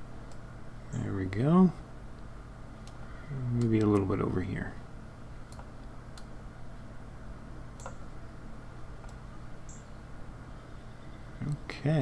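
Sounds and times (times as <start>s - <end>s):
steady low hum: 0.0s - 12.0s
computer mouse clicking: 5.5s - 6.3s, 7.8s - 8.0s.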